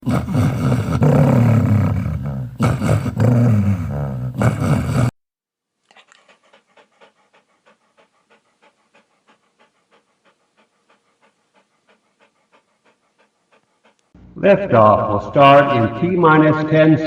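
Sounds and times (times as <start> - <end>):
dog panting: 5.9 - 14.2.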